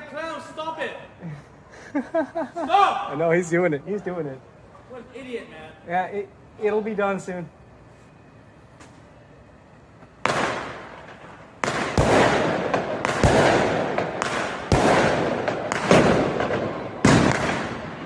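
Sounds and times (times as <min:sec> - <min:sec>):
fireworks bangs echoing: 0:10.2 - 0:18.0.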